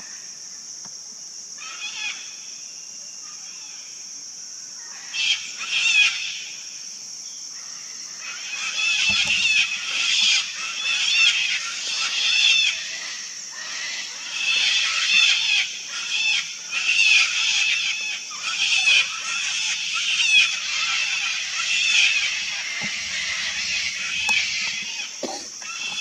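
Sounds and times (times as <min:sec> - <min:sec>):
cockatoos screeching: 0:08.2 - 0:26.0.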